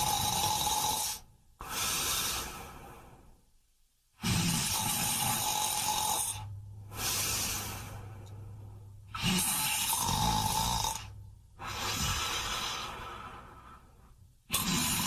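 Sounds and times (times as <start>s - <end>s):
loud breathy snores: 0.0s - 3.2s, 4.2s - 8.1s, 9.1s - 13.8s, 14.5s - 15.0s.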